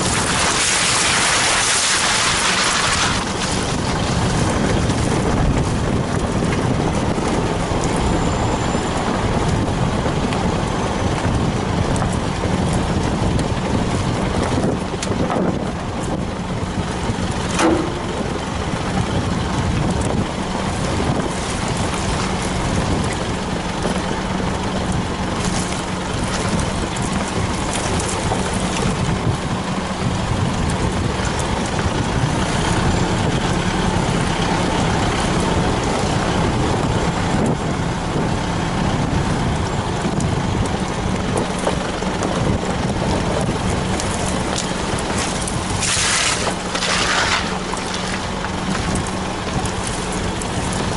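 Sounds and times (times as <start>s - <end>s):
vehicle engine droning: 0.0s - 50.9s.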